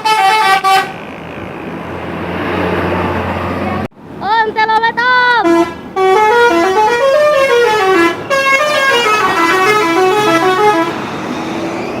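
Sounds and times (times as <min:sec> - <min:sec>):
bus horn playing a melody: 0:00.0 - 0:01.0, 0:05.4 - 0:11.1.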